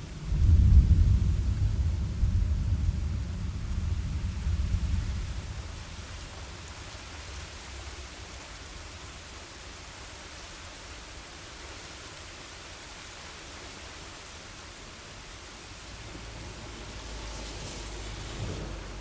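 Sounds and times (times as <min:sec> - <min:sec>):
low thunder rumble: 0:00.0 - 0:08.2, 0:15.7 - 0:19.0
steady rain hiss: 0:00.0 - 0:19.0.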